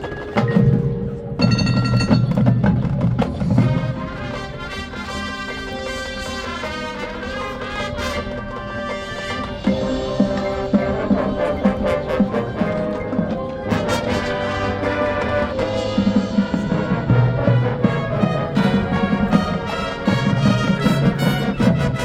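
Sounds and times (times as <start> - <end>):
mallet percussion striking: 0.0 - 6.4
marching band playing: 0.0 - 22.0.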